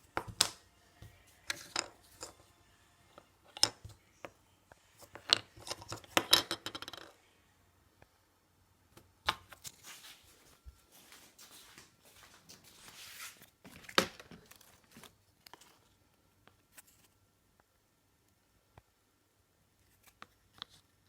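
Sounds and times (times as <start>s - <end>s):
scraping and rustling: 9.6s - 16.0s.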